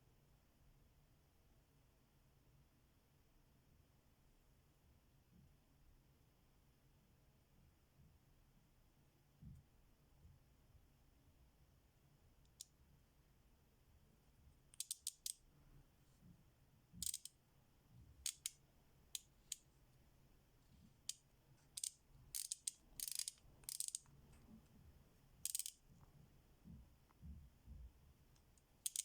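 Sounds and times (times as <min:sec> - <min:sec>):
ratchet clicking: 0:14.8 - 0:15.4, 0:17.0 - 0:17.3, 0:18.3 - 0:18.6, 0:21.8 - 0:24.1, 0:25.4 - 0:25.8.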